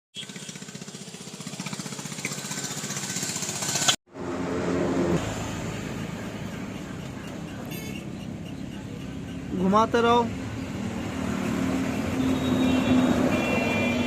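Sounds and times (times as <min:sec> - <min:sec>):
motorcycle running: 0:00.1 - 0:14.0.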